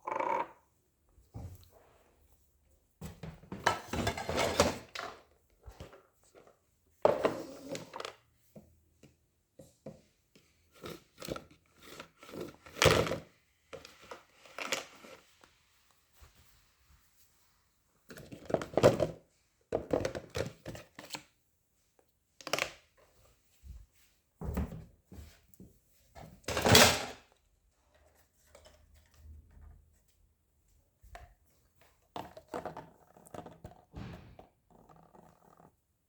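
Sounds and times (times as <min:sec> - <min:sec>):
clatter of hard objects: 0:03.1 - 0:06.0, 0:26.4 - 0:27.3, 0:32.1 - 0:35.8
knocks of hard objects handled: 0:34.0 - 0:34.5.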